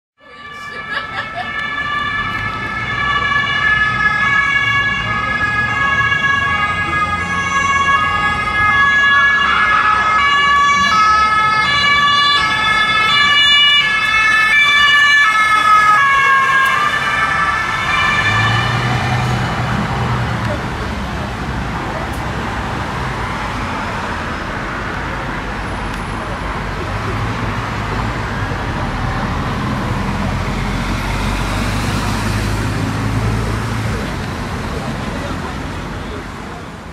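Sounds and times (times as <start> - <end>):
two-tone police siren: 0.2 - 20.5
car engine and road noise: 0.2 - 36.9.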